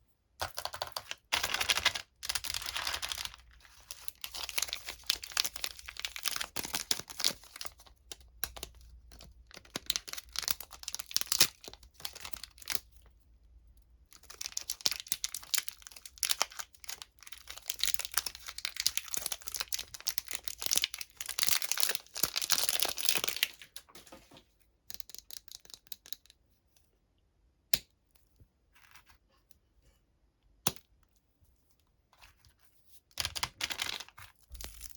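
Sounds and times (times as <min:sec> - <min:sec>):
candy wrapper tearing and crinkling: 0:00.4 - 0:13.0, 0:14.1 - 0:23.6, 0:33.2 - 0:34.9.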